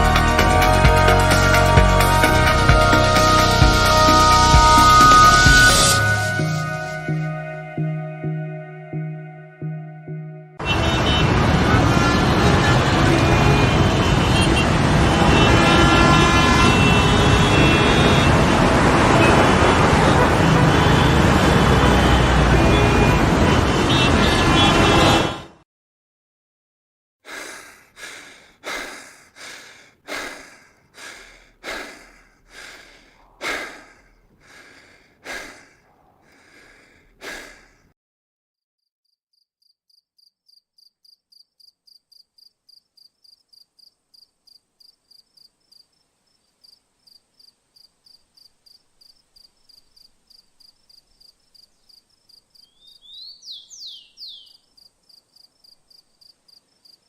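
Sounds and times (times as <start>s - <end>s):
breathy whooshes: 27.3s - 37.9s
cricket chirping: 39.0s - 53.1s, 54.5s - 57.0s
bird chirps: 49.6s - 55.2s.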